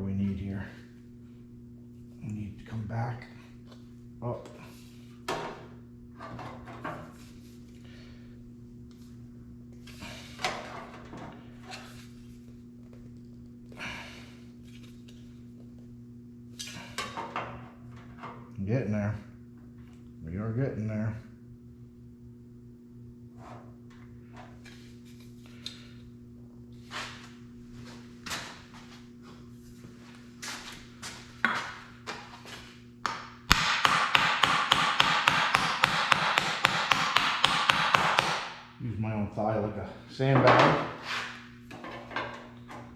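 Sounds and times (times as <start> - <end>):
knocks on sheet metal: 33.5 - 38.6.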